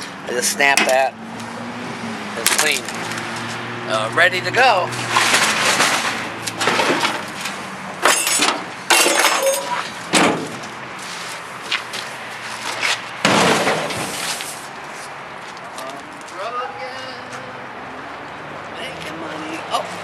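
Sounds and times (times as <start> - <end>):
scrap metal clattering: 5.0 - 11.4.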